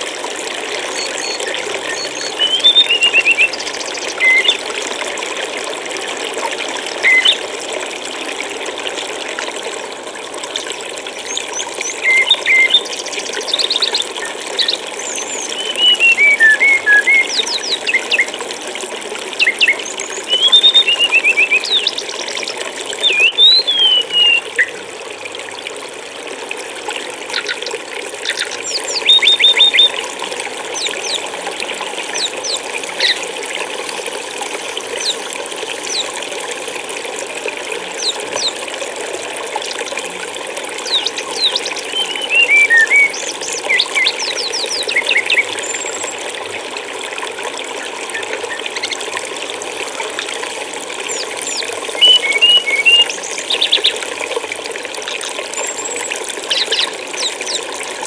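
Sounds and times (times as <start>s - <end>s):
flowing stream water: 0.0s - 58.0s
songbirds chirping and trilling: 0.8s - 4.7s, 6.8s - 7.5s, 11.2s - 18.4s, 19.3s - 24.8s, 27.3s - 30.0s, 30.7s - 33.3s, 37.9s - 38.7s, 40.7s - 46.2s, 51.0s - 54.1s, 55.0s - 57.7s.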